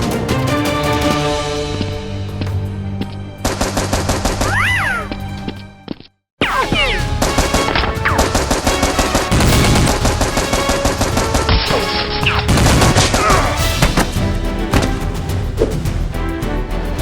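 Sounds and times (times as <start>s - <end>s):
action background music: 0.0s - 17.0s
rapid automatic gunfire: 3.4s - 4.6s, 6.9s - 13.4s.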